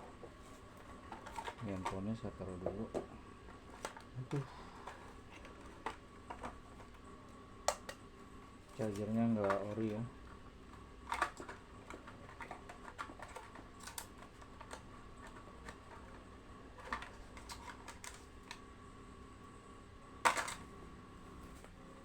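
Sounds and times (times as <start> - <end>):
phone box items handled: 0.2 - 7.0.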